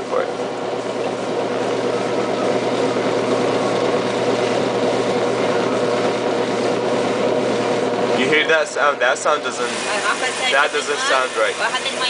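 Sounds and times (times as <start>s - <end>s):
washing machine hum: 0.0s - 12.0s
water rushing into machine: 9.4s - 12.0s.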